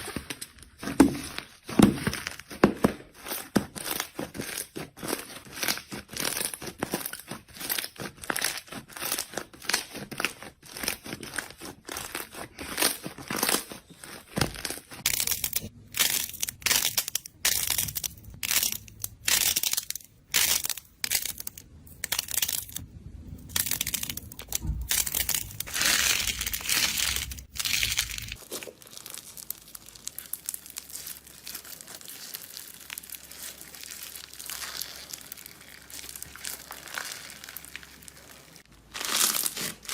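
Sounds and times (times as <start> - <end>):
slime squishing and popping: 23.5 - 39.9.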